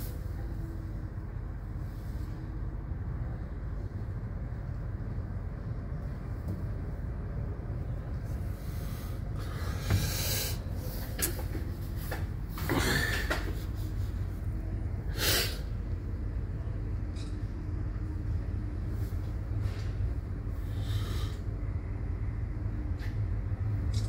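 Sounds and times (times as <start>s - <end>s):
city noise low rumble: 0.0s - 24.0s
wind: 0.0s - 24.0s.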